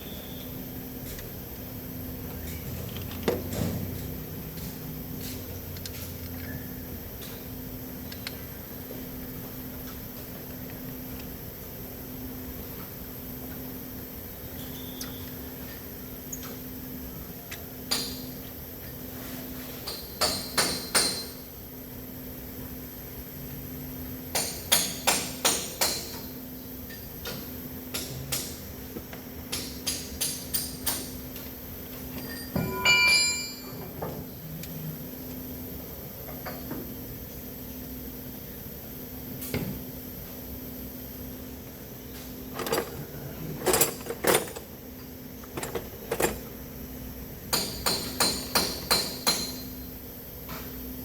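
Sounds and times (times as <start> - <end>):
ringing metallic clank: 32.2 - 33.8
metal tools clinking: 42.5 - 44.7, 45.5 - 46.5.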